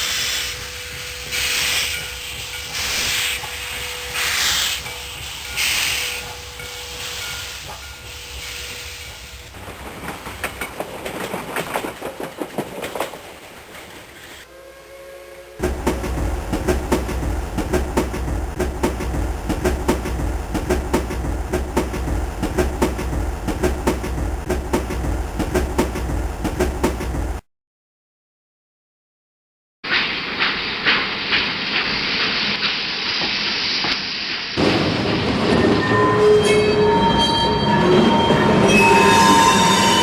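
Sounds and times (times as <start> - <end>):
train wheels clicking over rails: 0.0 - 14.5, 15.6 - 27.4
low train rumble: 0.0 - 27.4, 29.9 - 40.0.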